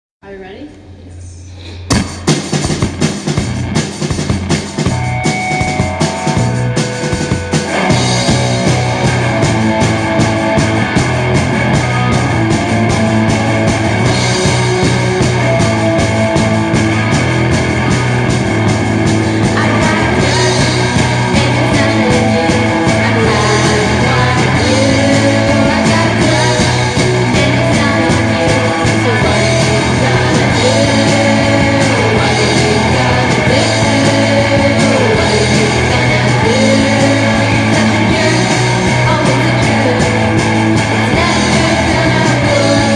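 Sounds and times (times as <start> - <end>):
rock song with guitar: 1.9 - 42.9
person singing: 19.3 - 42.9.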